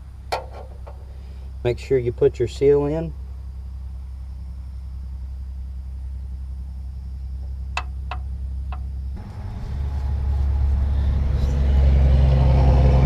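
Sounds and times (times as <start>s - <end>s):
engine idling: 5.6s - 13.0s.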